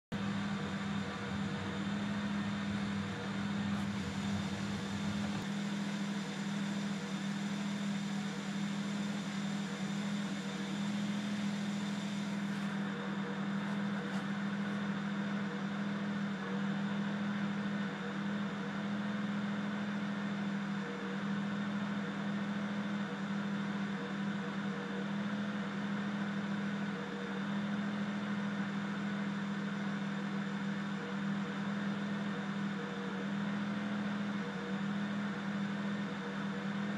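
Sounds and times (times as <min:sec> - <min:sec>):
car engine idling roughly: 0:00.2 - 0:36.9.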